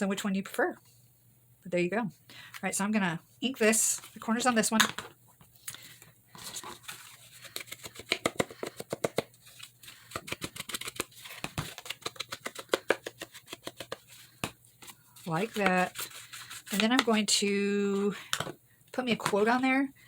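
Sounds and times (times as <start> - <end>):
inking tool scrubbing paper: 11.3 - 17.2.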